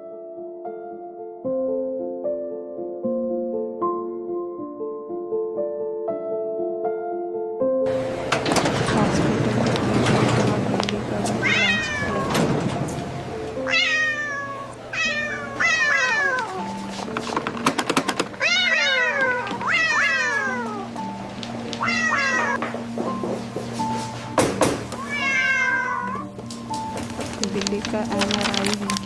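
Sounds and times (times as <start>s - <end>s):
background music: 0.0s - 29.0s
cat meowing: 11.4s - 12.5s, 13.6s - 16.7s, 18.4s - 21.0s, 21.8s - 22.6s, 25.0s - 26.3s.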